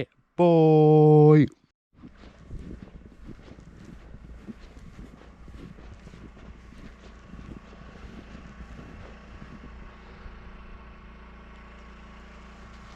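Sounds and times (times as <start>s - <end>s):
generator engine humming: 0.0s - 12.9s
crunching strokes: 2.0s - 9.7s.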